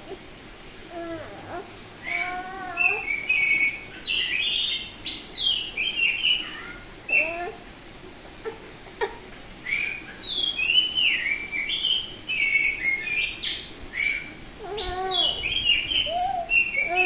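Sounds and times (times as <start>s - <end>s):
bird singing whistled notes: 2.1s - 7.3s, 9.6s - 17.0s.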